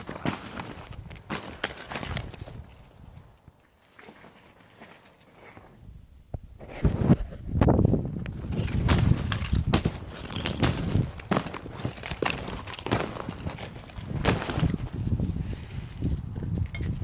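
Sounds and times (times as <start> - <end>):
footsteps on icy ground: 0.0 - 2.8, 8.4 - 15.0.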